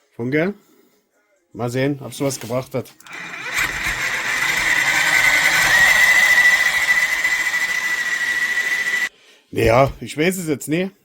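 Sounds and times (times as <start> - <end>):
rc car motor whining: 3.1 - 9.1.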